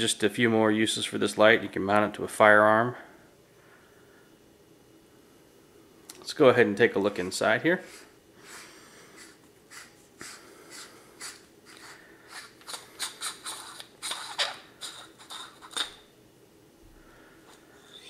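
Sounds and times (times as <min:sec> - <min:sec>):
flashlight threads scraping and clicking: 0:11.3 - 0:16.0.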